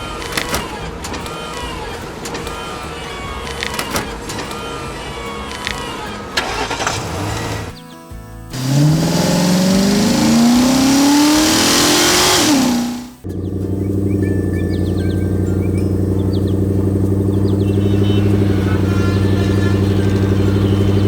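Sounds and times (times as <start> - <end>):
car engine idling: 6.4 - 7.7, 8.5 - 21.0
car engine revving: 6.4 - 7.7, 8.5 - 21.0.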